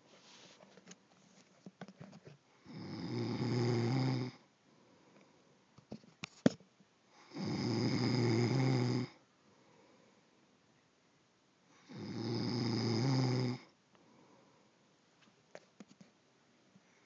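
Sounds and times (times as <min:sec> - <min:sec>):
loud snoring: 0:02.7 - 0:04.4, 0:07.2 - 0:09.2, 0:11.8 - 0:13.7.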